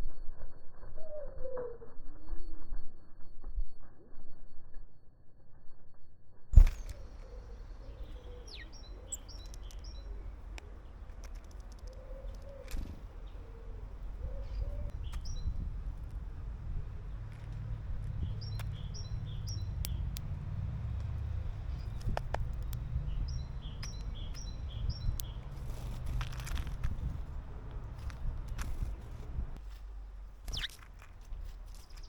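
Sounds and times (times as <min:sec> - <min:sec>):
low outdoor rumble: 0:06.6 - 0:32.0
small birds chirping: 0:06.6 - 0:32.0.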